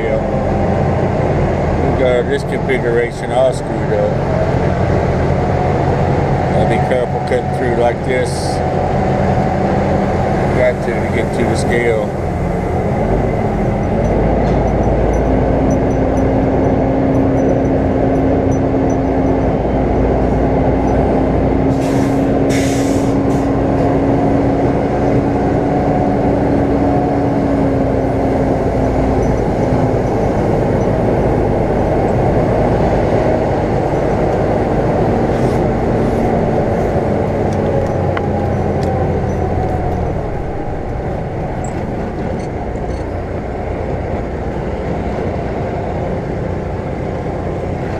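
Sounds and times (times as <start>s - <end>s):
truck diesel engine droning: 0.0s - 47.9s
brief high air hisses: 21.8s - 23.5s.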